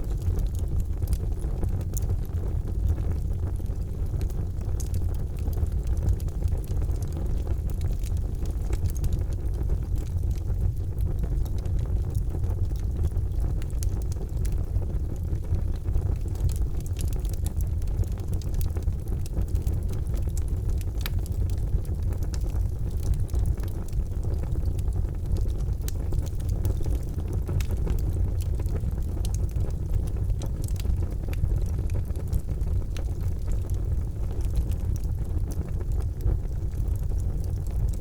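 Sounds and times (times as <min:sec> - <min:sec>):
fire crackling and popping: 0:00.0 - 0:38.0
fire rumbling: 0:00.0 - 0:38.0.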